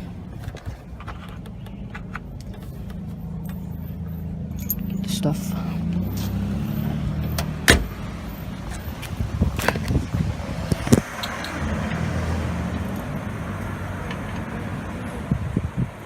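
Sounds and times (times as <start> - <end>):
car engine humming: 0.0 - 16.0.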